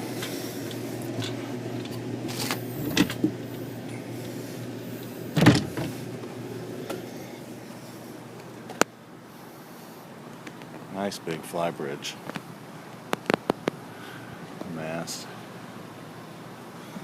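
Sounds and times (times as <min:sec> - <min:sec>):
loud thump: 0:05.4 - 0:06.0.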